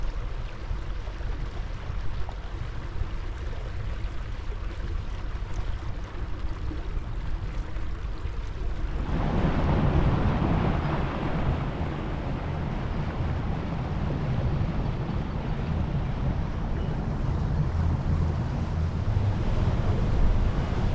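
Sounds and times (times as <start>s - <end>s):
boat motor rumble: 0.0s - 20.9s
rushing water: 0.0s - 20.9s
wind noise: 8.8s - 20.9s.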